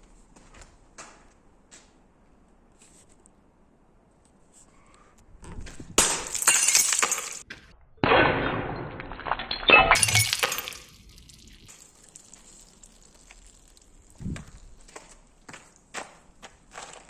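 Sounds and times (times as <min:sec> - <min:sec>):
glass bottles crushing and breaking: 0:06.0 - 0:13.8.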